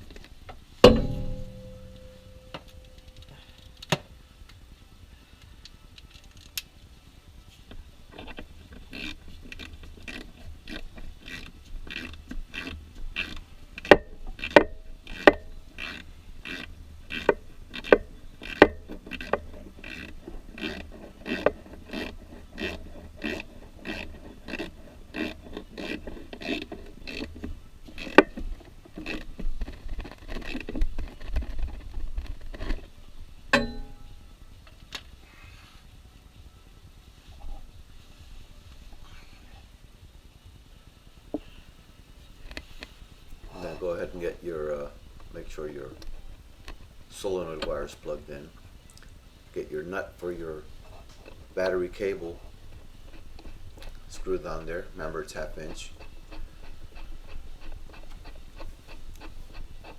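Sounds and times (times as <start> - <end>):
ratchet wrench clicking: 8.9 - 27.4.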